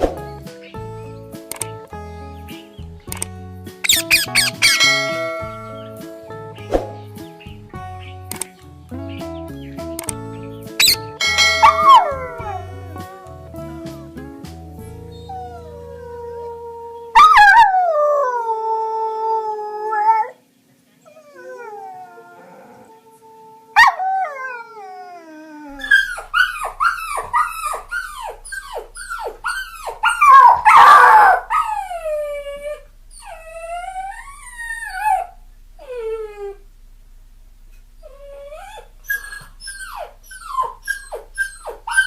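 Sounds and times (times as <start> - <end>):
dog yelping whines: 3.8 - 6.0, 10.8 - 12.8, 25.7 - 36.6, 38.1 - 42.0
dog howling: 10.8 - 13.5, 21.1 - 36.6.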